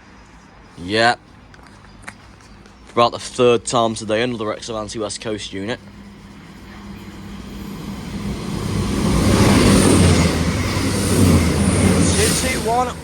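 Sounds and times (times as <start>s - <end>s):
train passing at speed: 3.1s - 13.0s.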